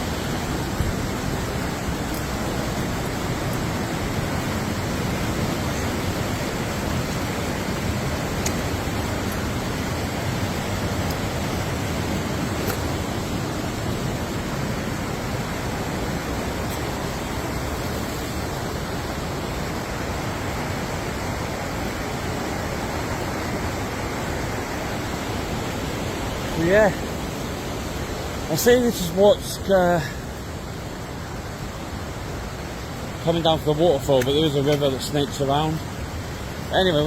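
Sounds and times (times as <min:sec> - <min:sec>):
river rushing over rocks: 0:00.0 - 0:37.0.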